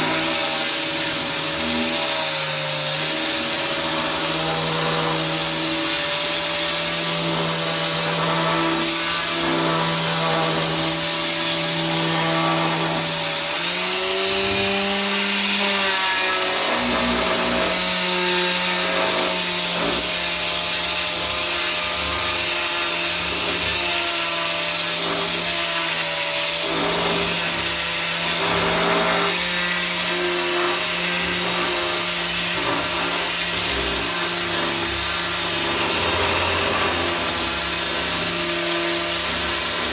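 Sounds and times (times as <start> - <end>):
electric sander on wood: 0.0 - 39.9.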